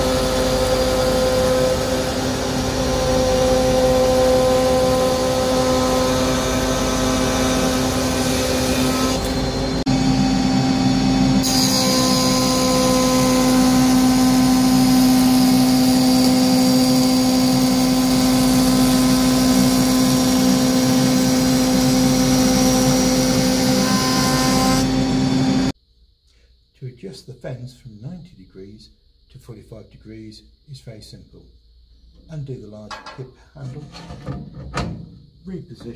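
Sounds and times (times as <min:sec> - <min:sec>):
planer thicknesser running: 0:00.0 - 0:25.7.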